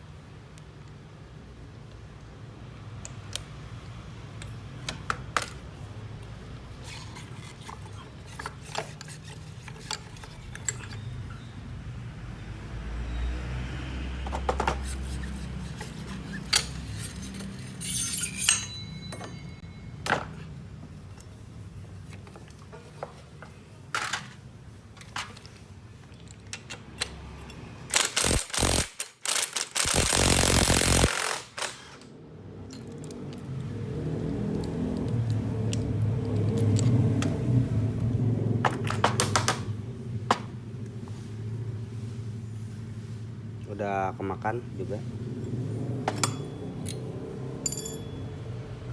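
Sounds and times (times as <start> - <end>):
metal tools clinking: 6.8 - 11.5, 14.8 - 20.4, 32.7 - 37.4, 45.4 - 48.6.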